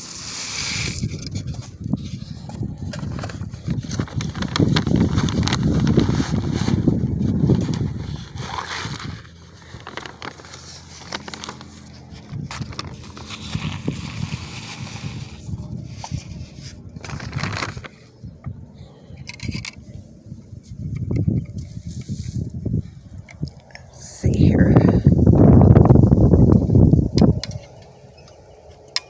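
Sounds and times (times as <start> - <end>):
bird feeder being handled: 7.4 - 18.2
birdseed crunching: 7.8 - 15.5.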